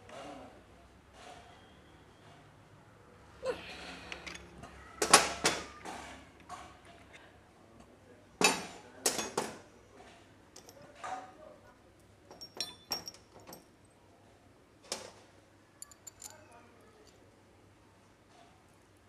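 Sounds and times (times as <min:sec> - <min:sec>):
metal tools clinking: 0:10.5 - 0:11.0, 0:12.3 - 0:13.7, 0:15.8 - 0:17.2.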